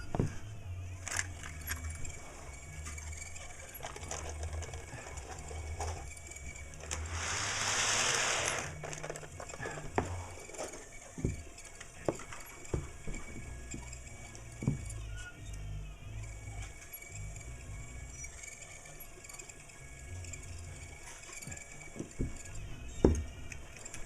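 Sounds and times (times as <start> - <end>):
model train motor whirring: 1.1 - 10.9
hiss: 7.0 - 8.8.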